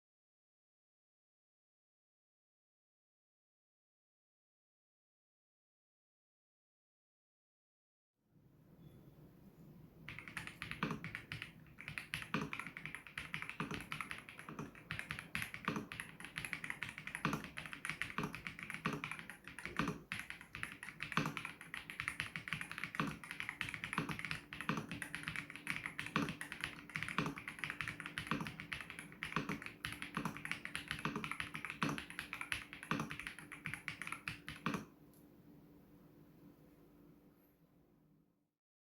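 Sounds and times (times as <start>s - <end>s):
mechanical keyboard typing: 10.1s - 34.9s.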